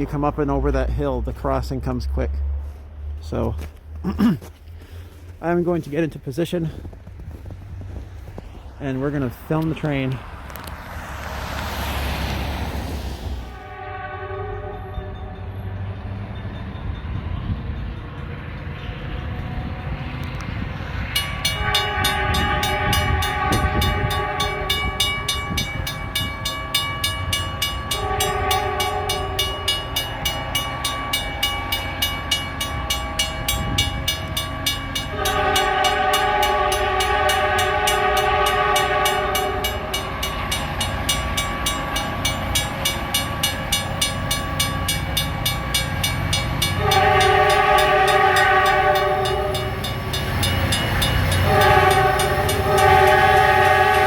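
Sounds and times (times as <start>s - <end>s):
low locomotive rumble: 0.0s - 54.0s
locomotive chime horn: 13.5s - 17.5s, 21.0s - 54.0s
crossing signal bell ringing: 14.5s - 18.5s, 21.0s - 54.0s.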